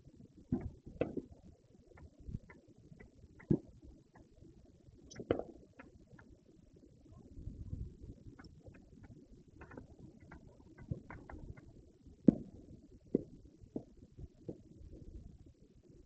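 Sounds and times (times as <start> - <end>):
distant fireworks booming: 12.2 - 13.9.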